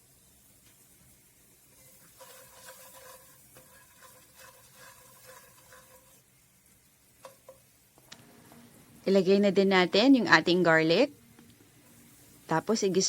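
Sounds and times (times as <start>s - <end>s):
onion sizzling in oil: 0.0s - 13.0s
spatula scraping pan: 1.7s - 6.4s.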